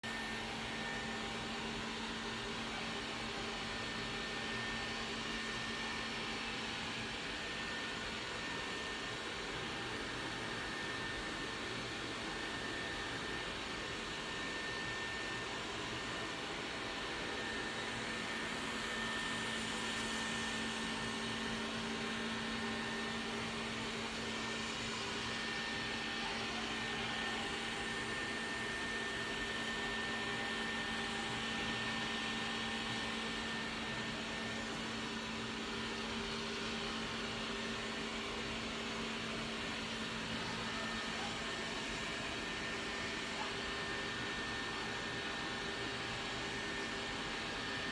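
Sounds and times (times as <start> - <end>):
robot vacuum cleaner motor hum: 0.1 - 47.9.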